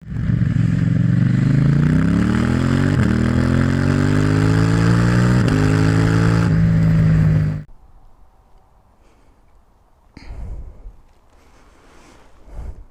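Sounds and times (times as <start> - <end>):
motorcycle engine revving under load: 0.0 - 7.7.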